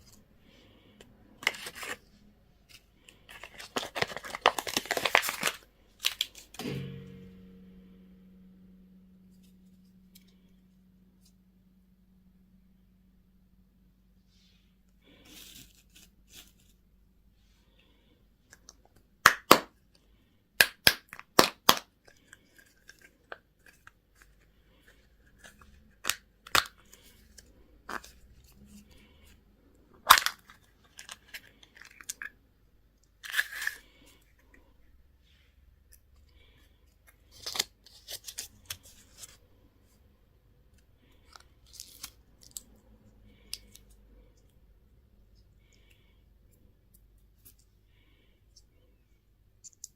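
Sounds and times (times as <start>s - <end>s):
plastic wrappers crinkling and tearing: 1.4s - 2.1s, 2.7s - 6.6s, 37.2s - 39.4s, 41.2s - 42.7s
plastic packaging rustling: 2.7s - 6.6s.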